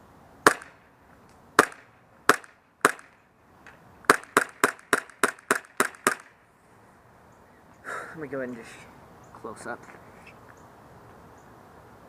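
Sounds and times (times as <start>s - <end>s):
airsoft pistol shots: 0.4s - 0.8s, 1.6s - 3.2s, 4.1s - 6.4s.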